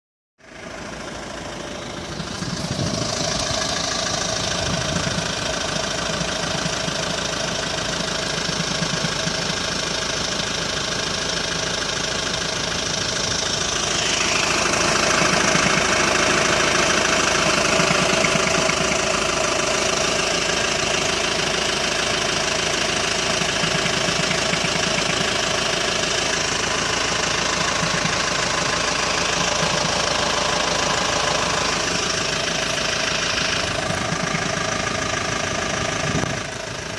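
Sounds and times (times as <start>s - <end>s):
diesel engine idling: 0.4s - 36.9s
engine knocking: 0.4s - 36.9s.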